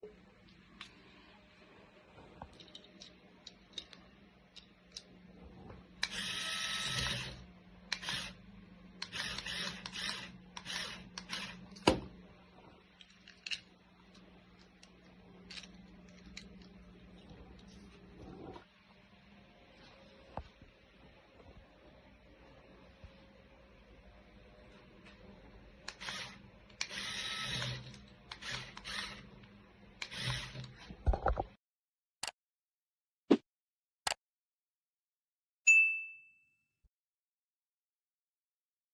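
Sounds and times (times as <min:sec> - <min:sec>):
small electric motors whirring: 0:06.0 - 0:08.4, 0:09.0 - 0:11.7, 0:25.9 - 0:29.4, 0:30.0 - 0:31.0
motor start clicks: 0:25.9 - 0:29.2, 0:30.0 - 0:30.8.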